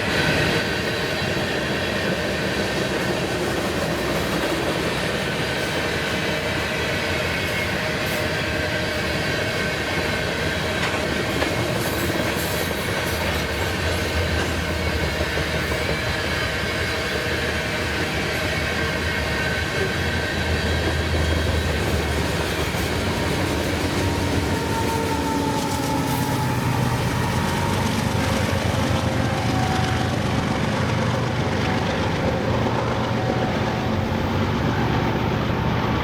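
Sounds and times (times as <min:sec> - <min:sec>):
freight train wheels on rails: 0:00.0 - 0:36.0
faint high squeal: 0:23.7 - 0:28.2.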